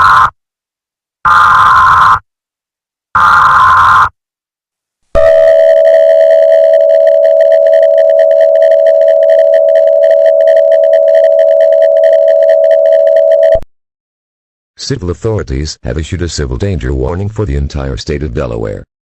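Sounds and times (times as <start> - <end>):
steady alarm tone: 5.2 - 13.6.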